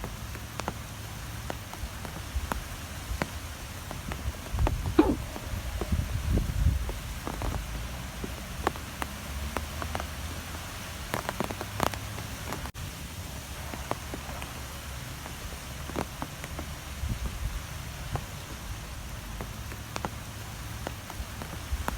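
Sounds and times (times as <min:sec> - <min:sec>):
strong wind rumbling: 0:04.5 - 0:07.1.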